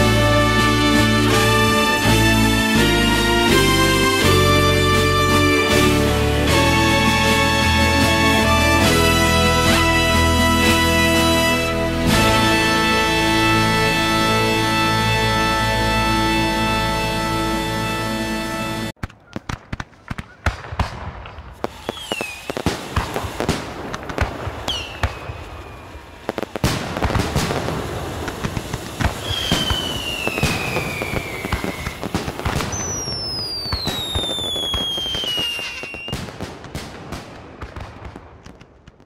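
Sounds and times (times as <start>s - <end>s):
fireworks crackling and banging: 0.0s - 17.1s, 18.8s - 39.0s
firework whistles falling in pitch: 21.6s - 23.6s, 24.7s - 36.2s.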